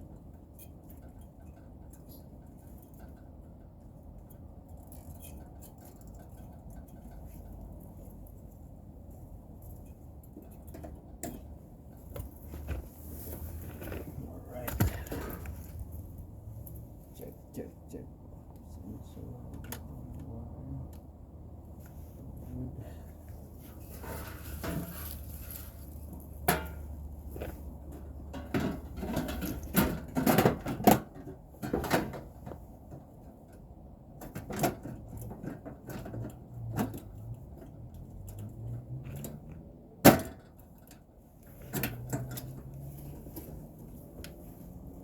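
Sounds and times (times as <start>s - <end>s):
knocks and clatter on metal unit: 26.4s - 32.7s.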